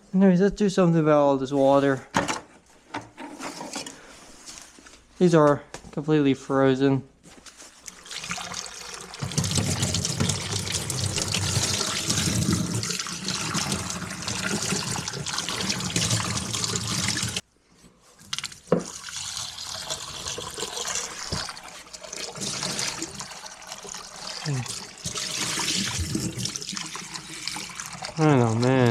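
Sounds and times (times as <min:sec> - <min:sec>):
water running from a tap: 0:07.8 - 0:17.4, 0:18.3 - 0:28.9.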